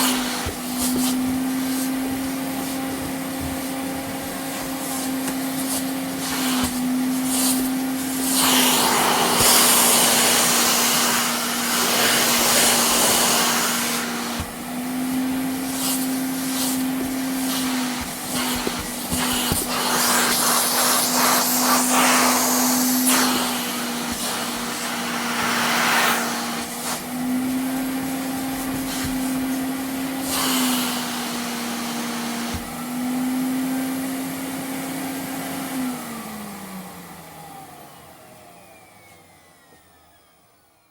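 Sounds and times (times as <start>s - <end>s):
vacuum cleaner running: 0.0s - 40.9s
vacuum motor winding down: 6.1s - 34.4s.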